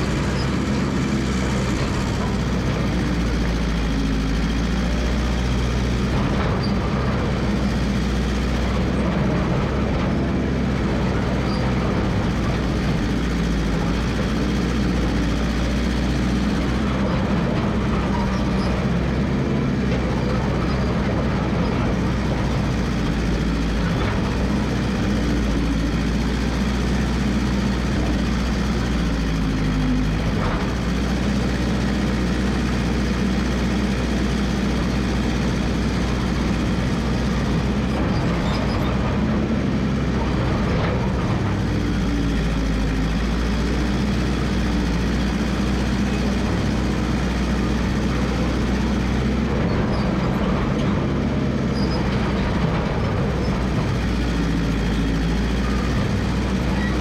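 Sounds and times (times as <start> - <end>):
dozer engine running: 0.0 - 57.0.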